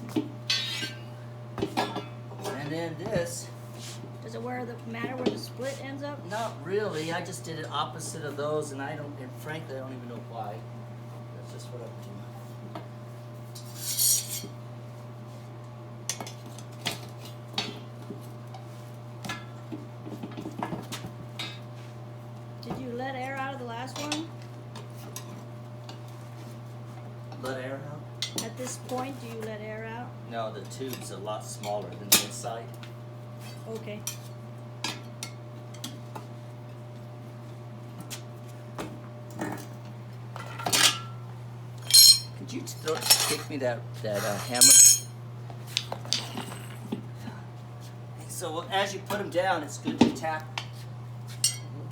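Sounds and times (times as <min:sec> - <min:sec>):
steady low hum: 0:33.4 - 0:51.9
metal tools clinking: 0:41.8 - 0:43.5, 0:44.3 - 0:45.1
metal clinks and taps: 0:41.9 - 0:42.4
ringing metal clang: 0:41.9 - 0:42.4, 0:44.6 - 0:45.1.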